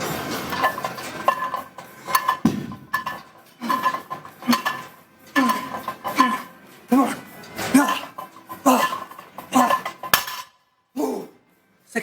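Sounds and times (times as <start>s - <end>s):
weight plates clinking: 0.0s - 10.6s.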